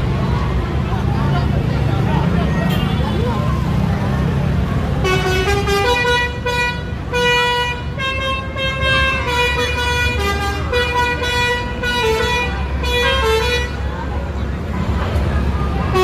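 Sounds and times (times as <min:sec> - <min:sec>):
bus engine rumble: 0:00.0 - 0:16.0
multi-tone bus horn tune: 0:05.0 - 0:13.8.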